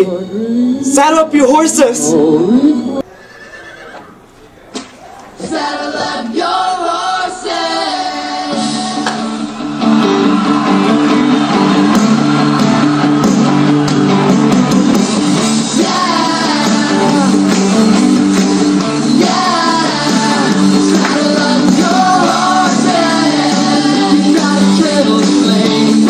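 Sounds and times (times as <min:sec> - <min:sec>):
rock song guitar: 0:08.4 - 0:26.0
person singing: 0:15.4 - 0:26.0.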